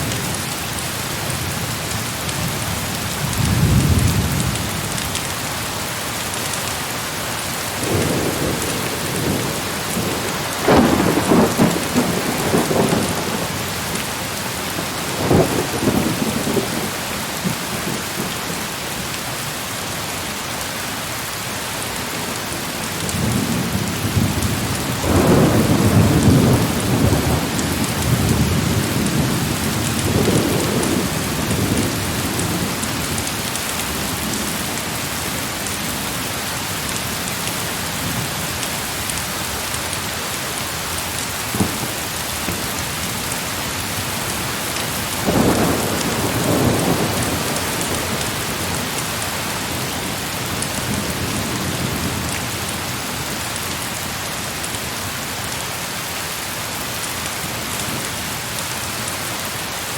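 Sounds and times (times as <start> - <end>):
heavy rain falling: 0.0 - 59.9
thunder rumbling: 7.8 - 18.4, 22.9 - 34.4, 41.3 - 52.4.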